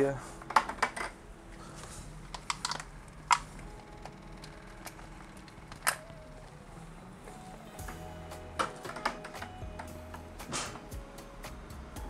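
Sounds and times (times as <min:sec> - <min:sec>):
computer parts clicking and clacking: 0:02.2 - 0:06.6.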